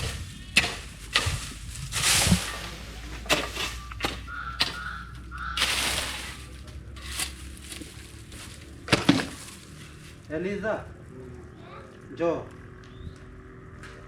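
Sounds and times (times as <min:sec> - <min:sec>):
dry vegetation rustling and crunching: 0:00.0 - 0:11.1.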